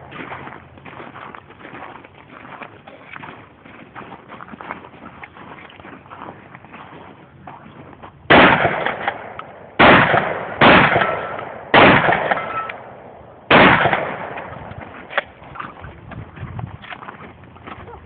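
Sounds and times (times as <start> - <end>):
shotgun shots echoing: 8.3 - 15.4.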